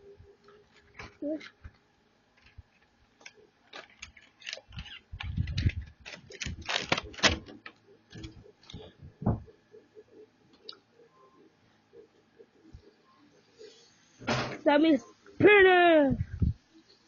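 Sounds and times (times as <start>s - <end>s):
packaging clicks and rustles: 2.4s - 8.9s.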